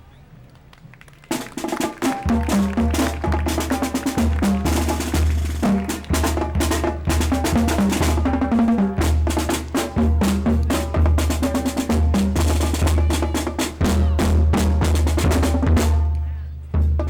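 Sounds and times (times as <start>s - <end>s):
snare drum strikes: 1.3s - 14.0s
pitched drum notes: 1.3s - 17.0s
bass drum: 2.1s - 16.2s.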